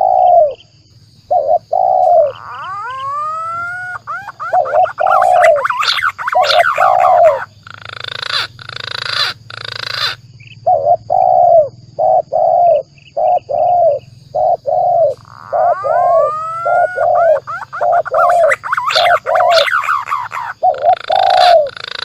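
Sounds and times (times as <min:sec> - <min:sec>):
dove cooing: 0:00.0 - 0:00.6, 0:01.3 - 0:22.0
harsh raspy bird notes: 0:01.2 - 0:12.2, 0:13.2 - 0:22.0.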